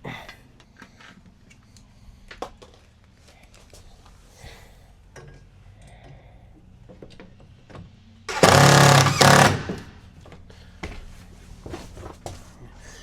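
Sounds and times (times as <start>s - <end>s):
impact driver hammering: 8.3s - 10.0s.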